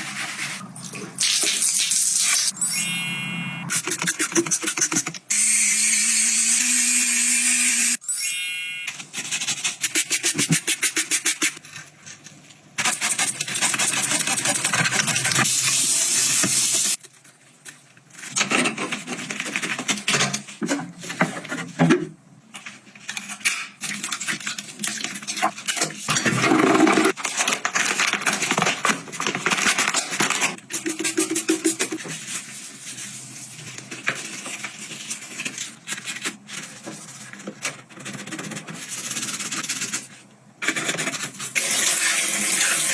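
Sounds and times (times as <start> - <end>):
household items clicking and scraping: 3.7 - 5.3, 8.9 - 15.5, 22.5 - 42.9.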